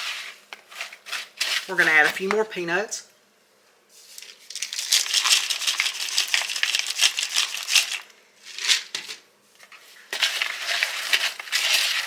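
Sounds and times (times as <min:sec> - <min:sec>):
plastic snack bag rustling: 0:00.0 - 0:02.6, 0:04.0 - 0:12.0
peanuts shaken out: 0:04.1 - 0:09.2, 0:10.1 - 0:12.0.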